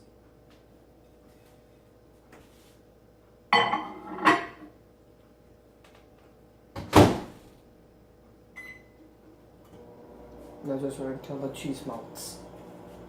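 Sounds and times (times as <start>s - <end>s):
keypad beep: 8.6s - 8.9s.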